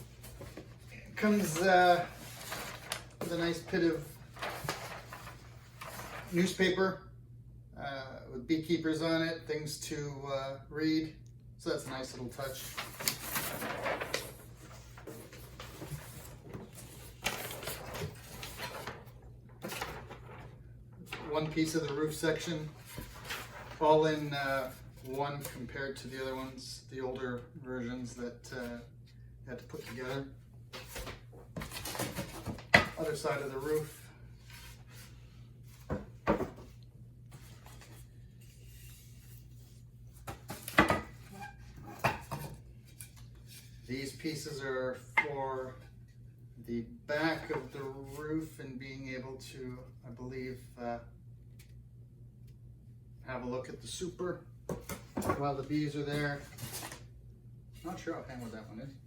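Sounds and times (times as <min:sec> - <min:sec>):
paper and cardboard rustling: 0:00.0 - 0:06.6, 0:12.0 - 0:25.7, 0:29.7 - 0:44.5, 0:54.7 - 0:57.1.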